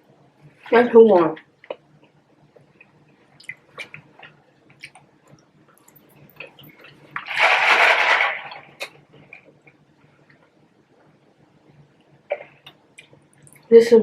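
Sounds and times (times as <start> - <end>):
eating sounds: 1.4 - 10.5.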